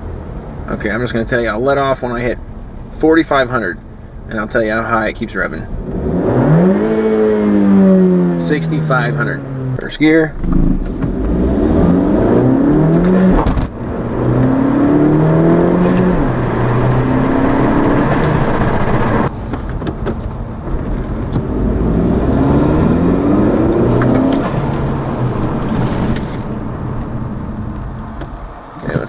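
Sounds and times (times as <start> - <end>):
car engine accelerating hard: 5.7 - 19.3, 20.5 - 29.0.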